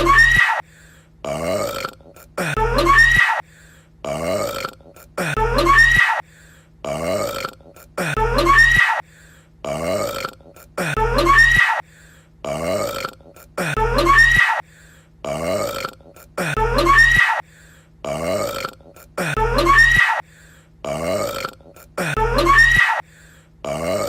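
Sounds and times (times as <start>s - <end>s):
man burping: 1.2s - 3.1s, 4.0s - 5.9s, 6.8s - 8.7s, 9.6s - 11.4s, 12.4s - 14.2s, 15.2s - 17.0s, 18.0s - 19.8s, 20.8s - 22.7s, 23.6s - 24.0s.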